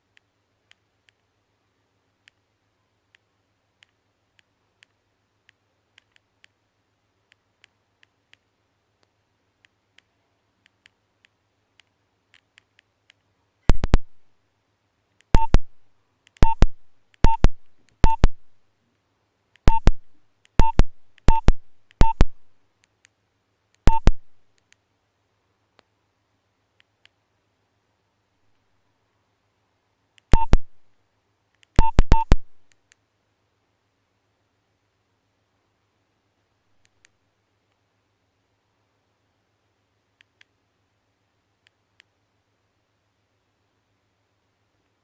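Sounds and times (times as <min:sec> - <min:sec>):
phone key beeps: 0:13.7 - 0:14.2, 0:15.4 - 0:15.8, 0:16.4 - 0:18.6, 0:19.7 - 0:22.5, 0:23.9 - 0:24.4, 0:30.3 - 0:30.8, 0:31.8 - 0:32.6
faint ticking: 0:15.4 - 0:18.6, 0:19.7 - 0:22.5, 0:23.9 - 0:24.4.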